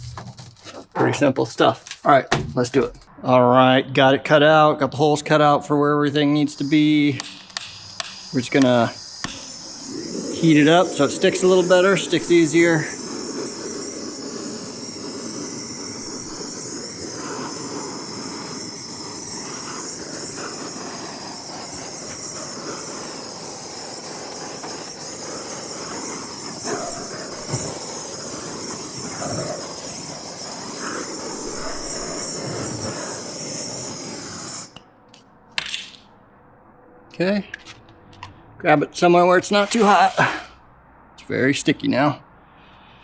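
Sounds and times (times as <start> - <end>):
heat gun blowing air: 6.4 - 34.8, 39.5 - 40.5.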